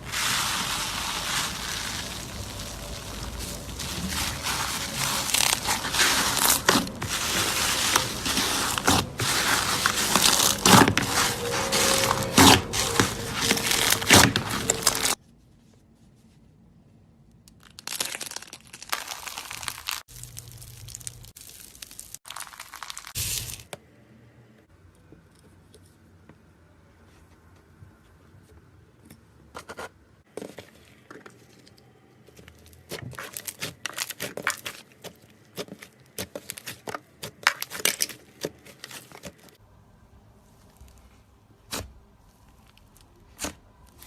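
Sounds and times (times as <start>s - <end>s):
slime squeezed and crackling: 0.0s - 15.2s, 17.6s - 23.7s
slime squishes: 0.0s - 15.2s, 17.6s - 23.7s.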